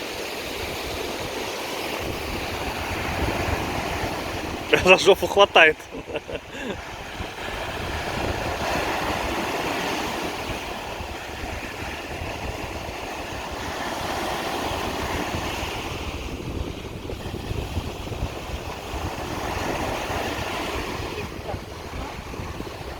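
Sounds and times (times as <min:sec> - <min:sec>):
wind rumbling on microphone: 0:00.0 - 0:04.9, 0:05.8 - 0:22.9
sea waves washing ashore: 0:00.0 - 0:22.9.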